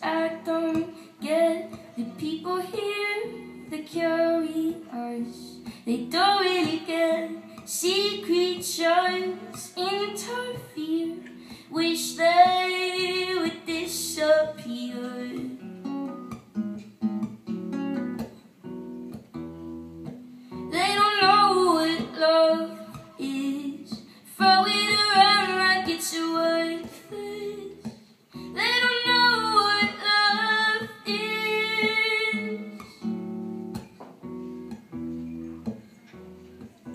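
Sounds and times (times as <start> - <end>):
woman singing: 0.0 - 15.7, 20.7 - 33.1
guitar playing: 0.0 - 36.9.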